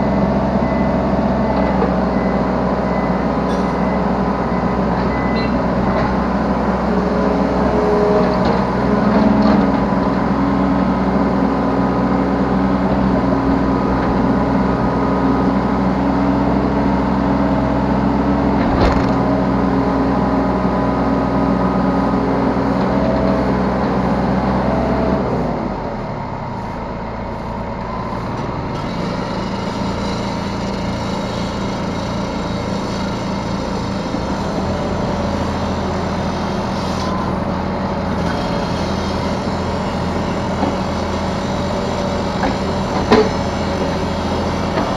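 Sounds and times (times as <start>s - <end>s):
excavator diesel engine running: 0.0s - 44.9s.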